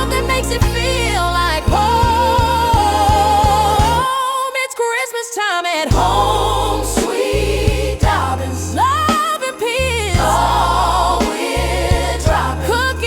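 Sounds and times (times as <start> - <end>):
stepping bass line: 0.0 - 4.0, 5.9 - 9.2, 9.8 - 13.0
voices singing christmas song: 0.0 - 13.0.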